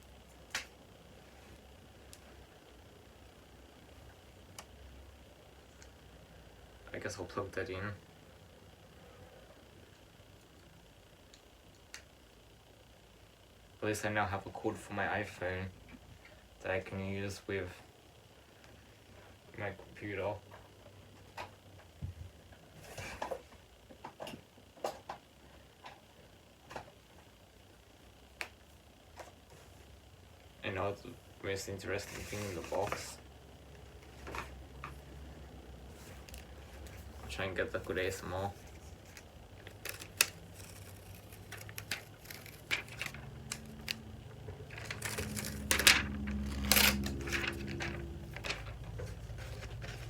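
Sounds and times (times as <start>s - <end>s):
packaging rustle: 38.4s - 44.0s, 44.7s - 50.0s.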